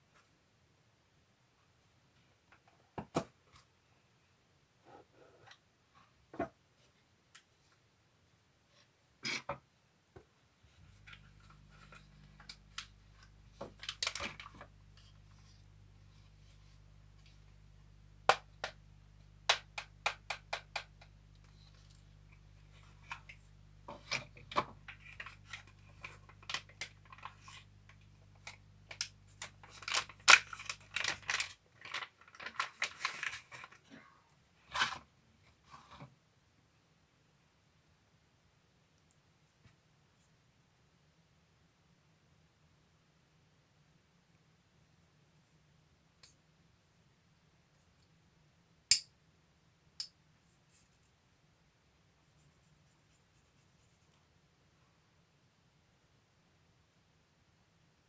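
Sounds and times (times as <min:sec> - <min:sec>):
faint low hum: 0:10.6 - 0:34.4
packaging clicks and taps: 0:18.1 - 0:21.6.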